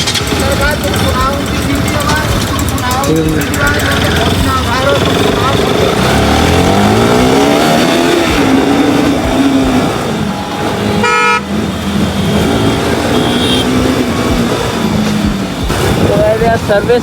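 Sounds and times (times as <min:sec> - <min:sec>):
motorcycle engine pulling away: 0:00.0 - 0:17.0
vehicle horn toot: 0:10.2 - 0:14.2.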